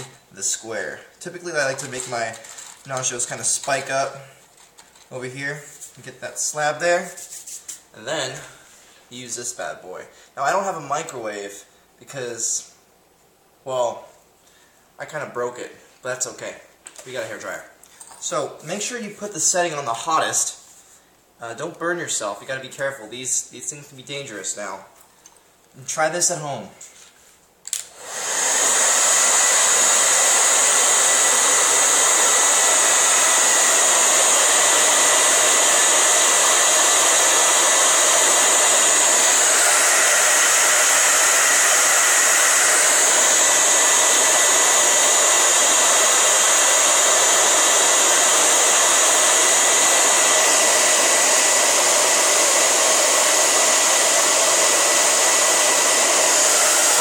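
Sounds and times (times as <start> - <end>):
hair dryer blowing: 0.0 - 4.2, 27.8 - 57.0.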